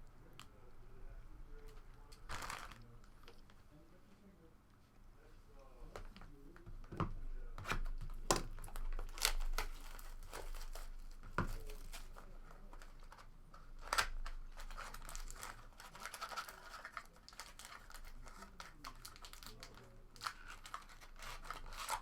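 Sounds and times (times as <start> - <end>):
card pack wrappers tearing and crinkling: 2.1 - 2.9, 7.8 - 22.0.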